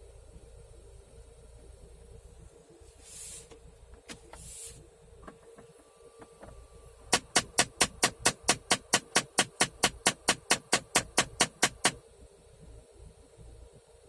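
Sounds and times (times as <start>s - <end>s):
short hisses: 2.9s - 3.6s, 4.3s - 4.8s
loud rapid knocking: 7.2s - 12.0s.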